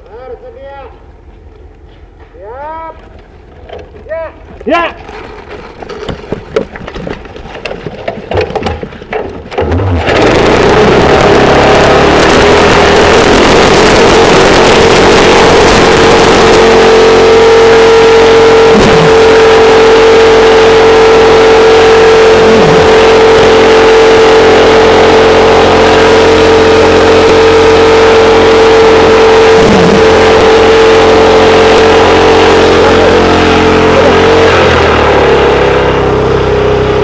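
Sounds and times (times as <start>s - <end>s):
engine knocks and clicks: 2.9s - 17.7s, 22.2s - 33.2s
boat engine running at high speed: 7.3s - 37.0s.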